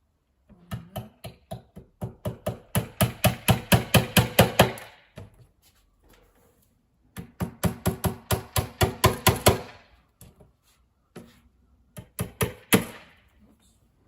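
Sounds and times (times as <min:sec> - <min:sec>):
hammer striking small nails: 0:00.7 - 0:05.4, 0:07.1 - 0:10.4, 0:11.9 - 0:13.2.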